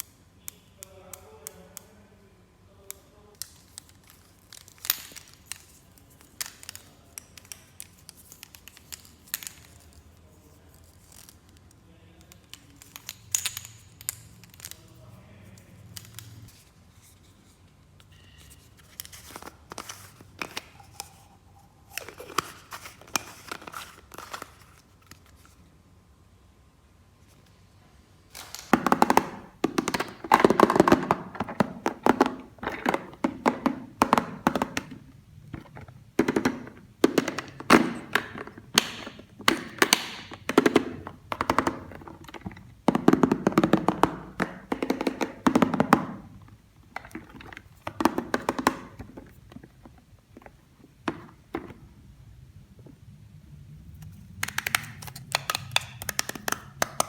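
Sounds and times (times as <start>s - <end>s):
plastic toy pieces clattering: 3.4s - 10.0s, 28.4s - 51.8s, 54.4s - 57.0s.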